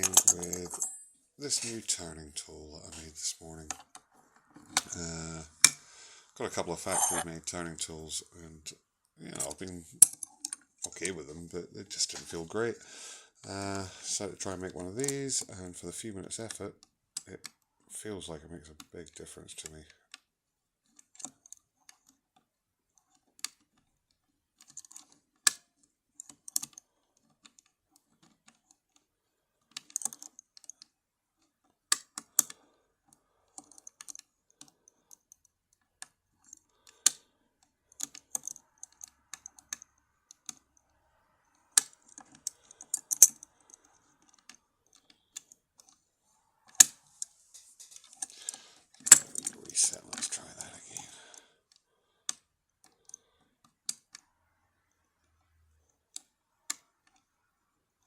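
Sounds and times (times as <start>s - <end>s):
faint ticking of lock pins: 20.9s - 46.0s, 46.6s - 58.0s
lock pick clicking in lock: 41.8s - 45.9s, 49.0s - 49.6s.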